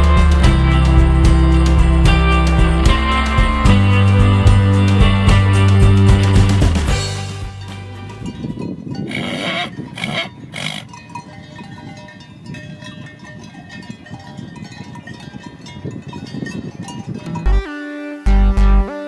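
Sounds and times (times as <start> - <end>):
livestock calling: 9.0 - 11.0.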